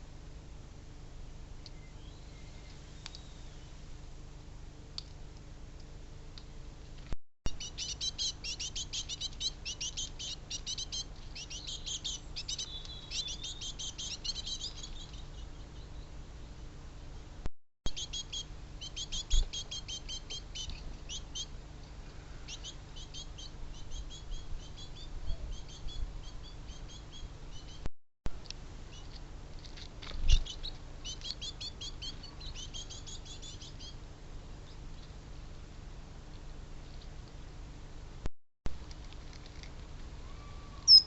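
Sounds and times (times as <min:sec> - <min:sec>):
songbirds chirping: 0:01.4 - 0:04.0, 0:07.5 - 0:17.4, 0:18.0 - 0:35.2, 0:40.1 - 0:41.0.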